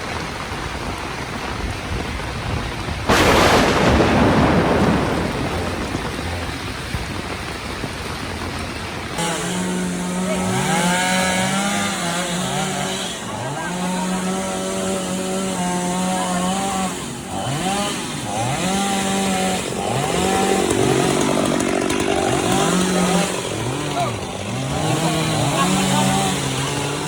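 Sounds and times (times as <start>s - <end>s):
chainsaw cutting wood: 9.2s - 27.0s.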